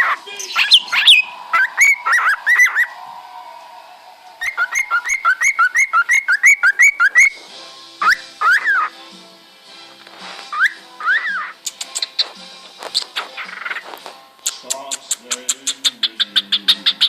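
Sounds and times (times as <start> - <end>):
cockatiel whistles rising and falling: 0.5 - 3.0, 4.4 - 7.4, 8.0 - 8.9, 10.5 - 11.6
cockatiel chirps: 4.4 - 7.4, 8.0 - 8.9, 10.5 - 17.0.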